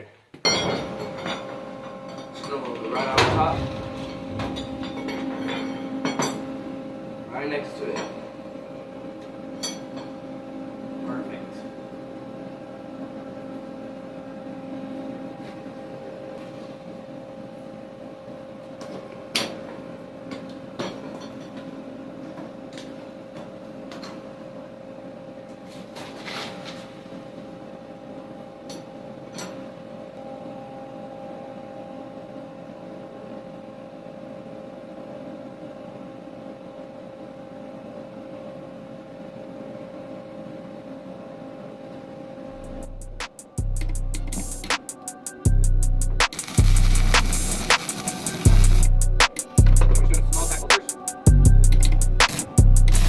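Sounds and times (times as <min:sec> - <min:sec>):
welding machine hum: 0:42.5 - 0:53.0.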